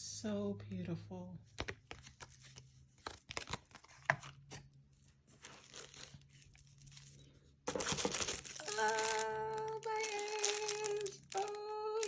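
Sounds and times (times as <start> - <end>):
wrapping crinkling and tearing: 1.9 - 12.0
packaging clicks: 7.7 - 12.0.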